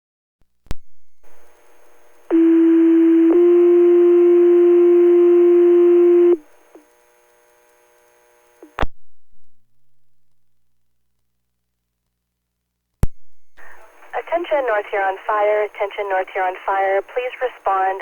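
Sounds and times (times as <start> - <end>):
radio key-up click: 0.7 - 1.4
radio squelch crackle: 0.7 - 2.3, 13.0 - 18.0
radio hiss: 1.2 - 2.4, 13.5 - 18.0.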